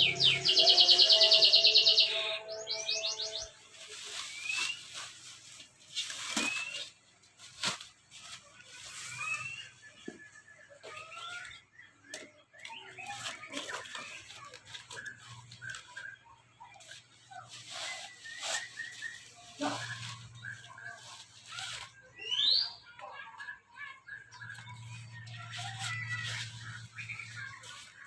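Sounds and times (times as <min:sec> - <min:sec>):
birds chirping: 0:00.0 - 0:28.0
packaging rustling: 0:03.8 - 0:09.7.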